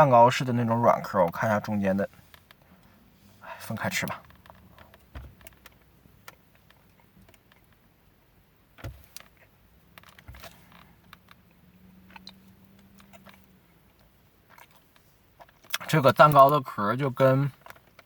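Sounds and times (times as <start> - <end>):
soft handling thumps: 3.8 - 7.0, 8.8 - 11.4.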